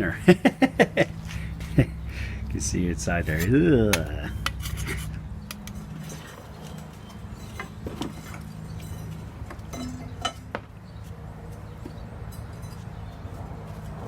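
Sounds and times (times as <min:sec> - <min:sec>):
steady low hum: 0:00.0 - 0:11.5
metal parts clinking: 0:03.2 - 0:10.6.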